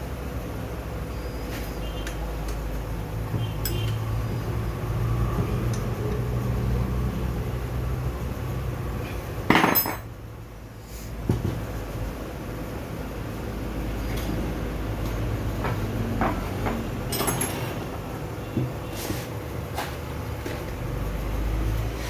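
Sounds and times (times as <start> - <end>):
metal parts and tools clinking: 3.6 - 4.1, 9.5 - 10.1, 17.1 - 18.0.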